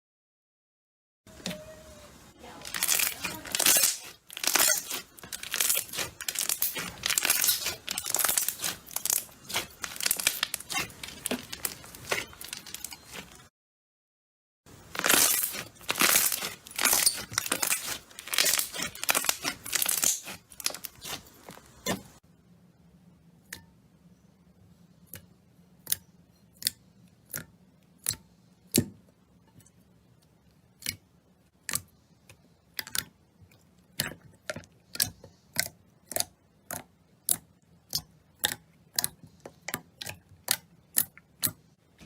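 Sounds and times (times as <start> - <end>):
slime squishing and popping: 2.6 - 13.4, 14.9 - 22.2, 33.9 - 41.6.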